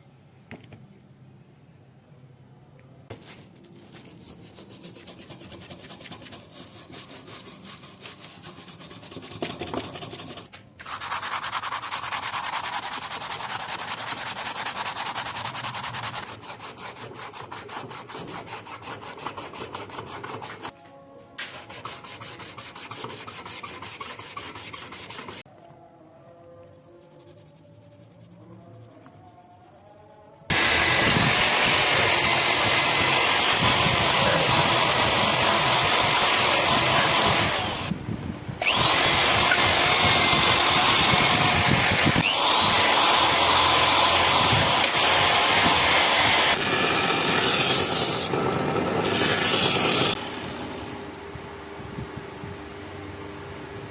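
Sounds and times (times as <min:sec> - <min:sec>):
power tool grinding steel blade: 0:30.5 - 0:37.9, 0:38.6 - 0:50.2.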